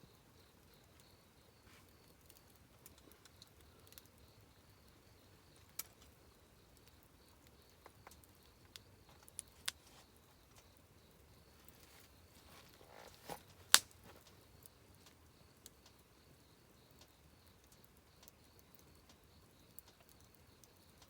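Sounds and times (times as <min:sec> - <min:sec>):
campfire crackling and popping: 0:00.1 - 0:21.0.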